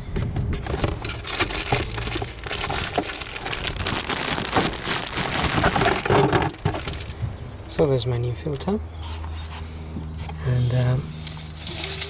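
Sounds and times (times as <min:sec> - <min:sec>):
packaging rustling and crinkling: 0:00.6 - 0:07.2.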